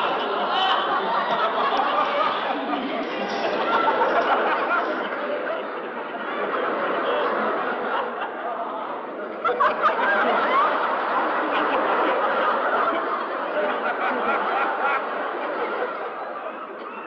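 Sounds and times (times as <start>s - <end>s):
crowd laughing: 0.0s - 17.0s.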